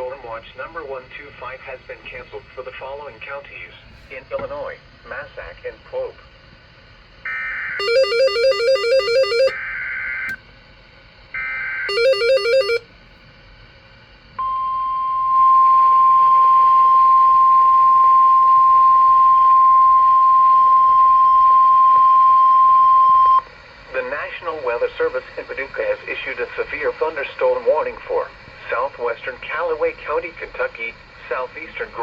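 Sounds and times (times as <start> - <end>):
steady warning alarm tone: 7.8 - 9.6, 11.9 - 12.8.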